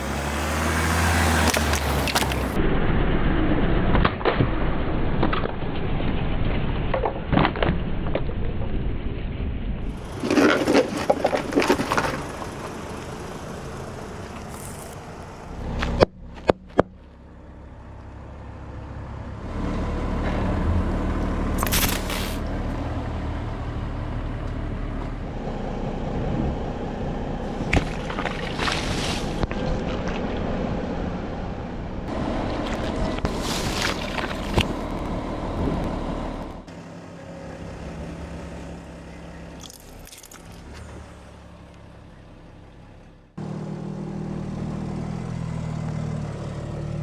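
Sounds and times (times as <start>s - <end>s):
car engine running: 0.0s - 2.7s, 9.8s - 47.0s
tyres crushing objects: 10.0s - 12.4s, 21.6s - 22.4s.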